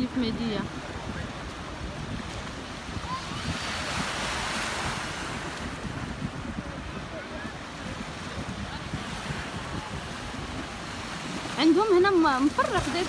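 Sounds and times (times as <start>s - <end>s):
small waves washing on shore: 0.0s - 13.0s
wind rumbling on microphone: 0.0s - 13.0s.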